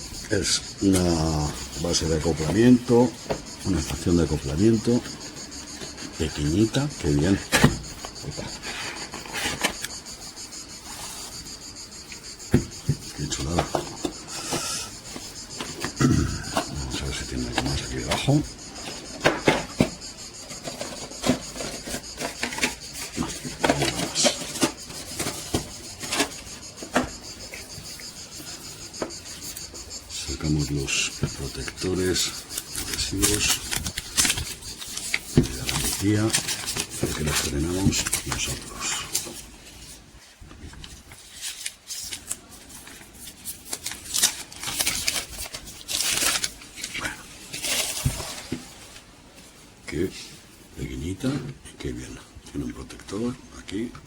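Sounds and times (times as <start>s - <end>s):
packaging rustling: 1.0s - 11.5s, 12.1s - 49.7s
plastic film peeling and crinkling: 29.0s - 49.0s.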